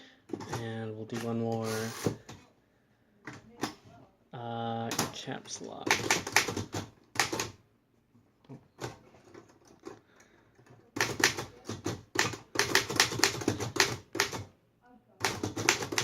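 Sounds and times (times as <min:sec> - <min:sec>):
manual typewriter keystrokes: 0:05.8 - 0:07.6, 0:10.6 - 0:14.5, 0:15.2 - 0:16.0.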